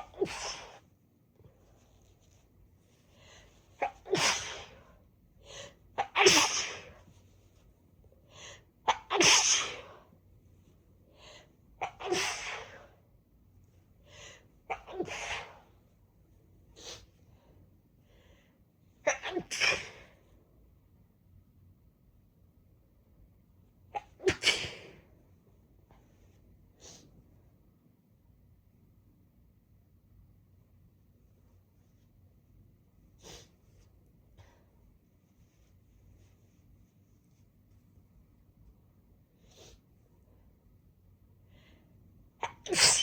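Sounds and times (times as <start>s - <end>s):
person sneezing: 0.0s - 0.8s, 3.8s - 5.0s, 6.0s - 7.0s, 8.9s - 10.0s, 11.8s - 13.0s, 14.7s - 15.7s, 19.1s - 20.2s, 24.0s - 25.1s, 42.4s - 43.0s.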